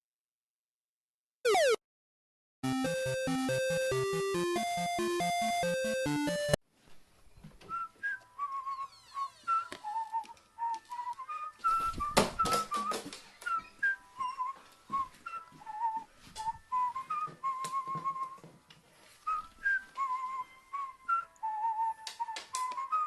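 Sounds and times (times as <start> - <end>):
person whistling: 7.7 - 18.5, 19.2 - 23.0.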